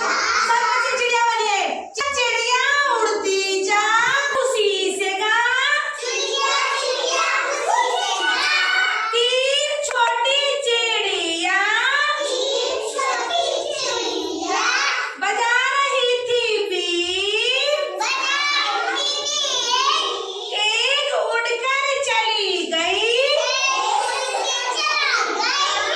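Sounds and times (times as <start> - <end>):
children singing: 0.0 - 0.5, 5.9 - 9.2, 12.0 - 15.2, 17.6 - 20.7, 23.3 - 25.9.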